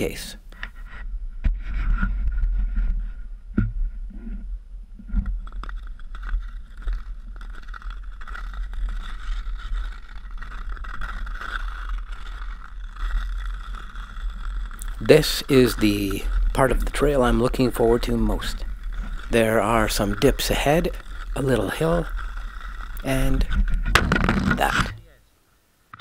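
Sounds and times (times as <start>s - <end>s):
ice skate blades scraping on ice: 5.1s - 25.1s.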